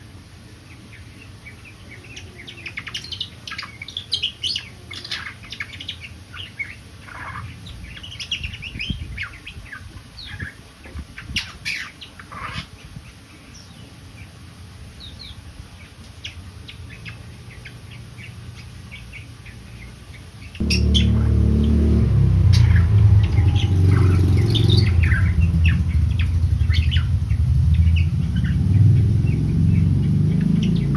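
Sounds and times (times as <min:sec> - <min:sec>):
bird chirping and calling: 0:20.6 - 0:30.9
steady low hum: 0:20.6 - 0:30.9.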